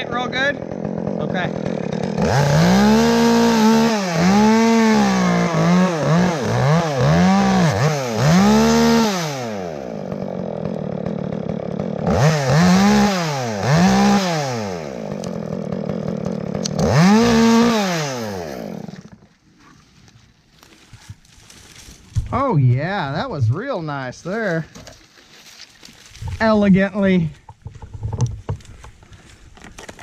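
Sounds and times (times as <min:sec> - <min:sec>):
chainsaw revving and cutting wood: 0:00.0 - 0:19.7.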